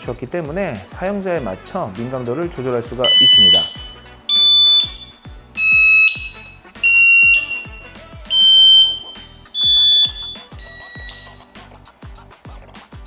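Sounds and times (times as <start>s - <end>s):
music with kick-drum beat: 0.0s - 13.0s
bicycle alarm high beeps: 3.0s - 11.6s.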